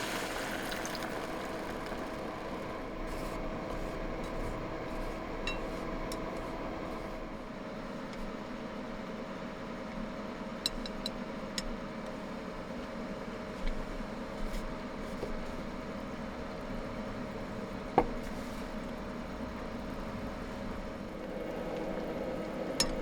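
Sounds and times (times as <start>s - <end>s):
electric cooking appliance hum: 0.0s - 9.5s, 18.8s - 23.0s.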